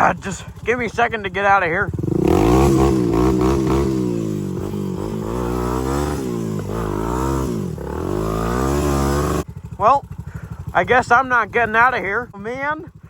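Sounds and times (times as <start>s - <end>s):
quad engine revving: 0.0s - 9.5s.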